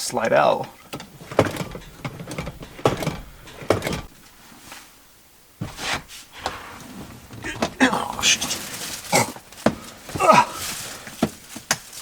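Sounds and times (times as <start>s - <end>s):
clunks and knocks: 0.6s - 4.3s, 5.6s - 8.7s
rustling: 1.2s - 5.0s, 5.6s - 12.0s.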